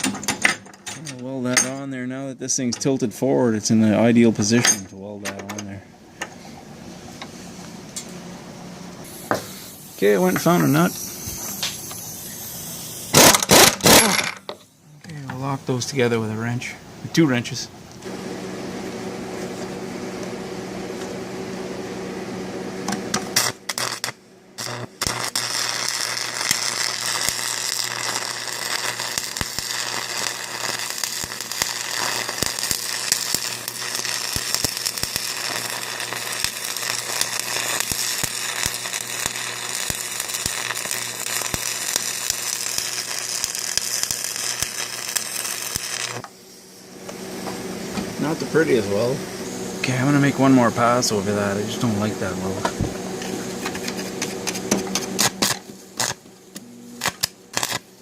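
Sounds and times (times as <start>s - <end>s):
arc welding crackle: 9.0s - 14.6s, 22.9s - 58.0s
low hum: 46.0s - 57.3s.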